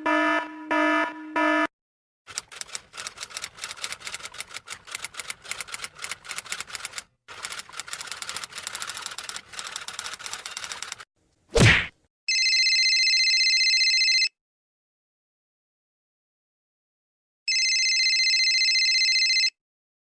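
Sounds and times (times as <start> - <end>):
rapid dense clicking: 2.3 - 11.0.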